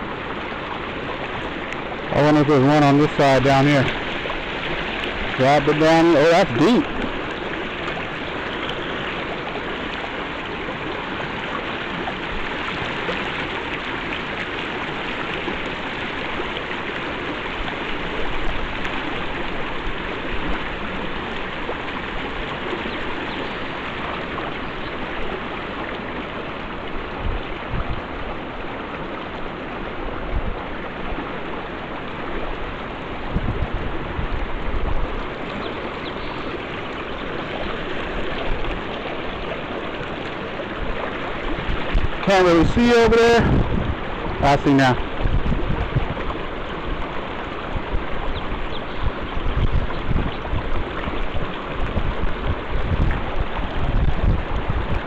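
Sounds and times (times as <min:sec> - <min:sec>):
river water rushing: 0:00.0 - 0:55.0.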